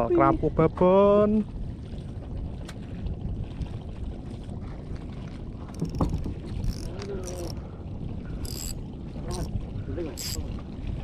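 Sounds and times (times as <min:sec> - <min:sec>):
boat engine low rumble: 0:00.0 - 0:11.0
wind noise: 0:00.0 - 0:11.0.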